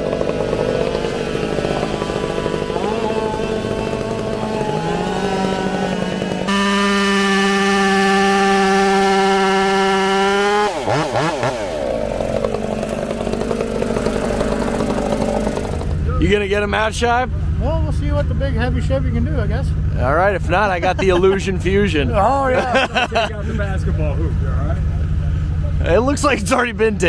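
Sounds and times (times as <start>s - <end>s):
vehicle engine revving hard: 0.0s - 16.7s, 19.9s - 24.5s.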